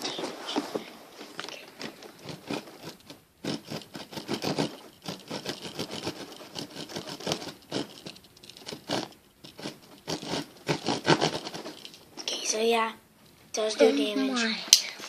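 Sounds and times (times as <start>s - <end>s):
small saw blade scraping: 2.2s - 12.0s.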